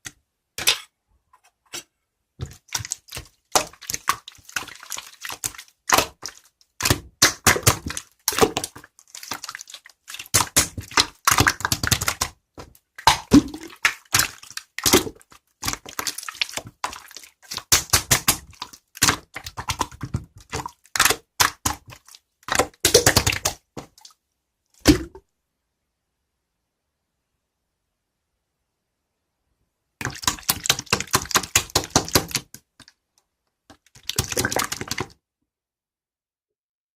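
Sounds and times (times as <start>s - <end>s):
slime squishing with wet clicks: 2.5s - 24.1s.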